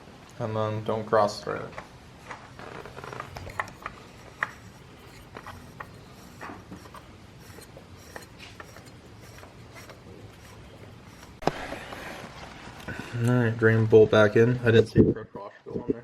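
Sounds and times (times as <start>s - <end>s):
hand rubbing on bolt: 2.1s - 11.6s.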